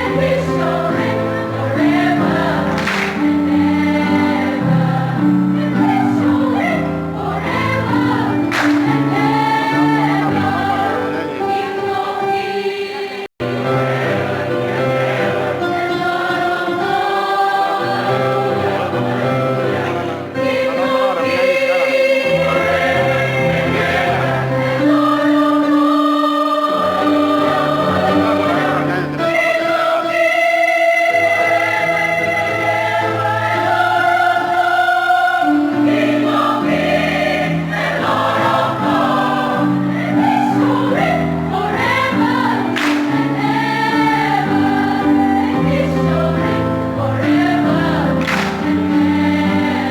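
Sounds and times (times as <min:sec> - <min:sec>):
choir singing: 0:00.0 - 0:49.9.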